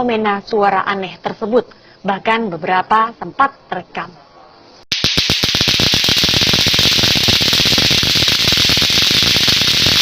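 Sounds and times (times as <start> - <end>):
harsh crackling hiss: 4.9 - 10.0.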